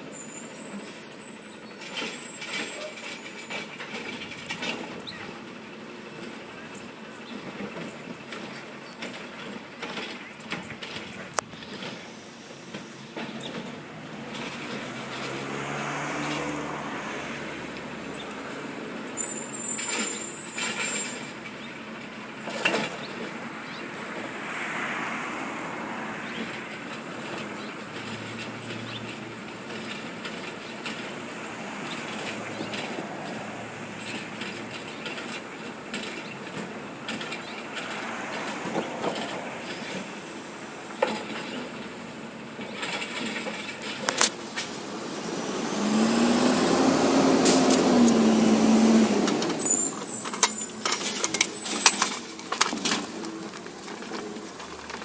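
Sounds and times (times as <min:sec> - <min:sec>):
garbage truck engine running: 0:26.3 - 0:55.0.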